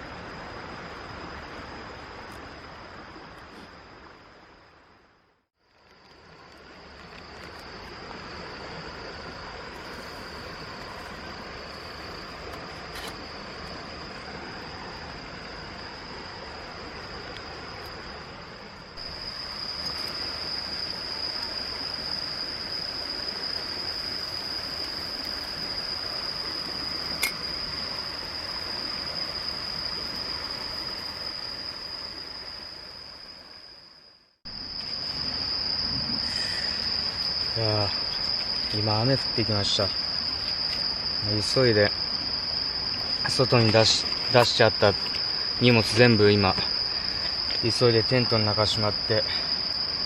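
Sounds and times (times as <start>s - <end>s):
insects trilling: 0.0s - 50.0s
stream rushing: 5.8s - 33.3s.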